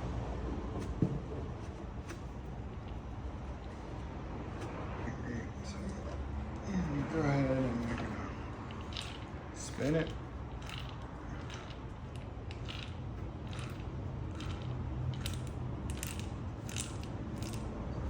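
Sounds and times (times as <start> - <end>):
hub motor gears clicking: 7.1 - 18.0.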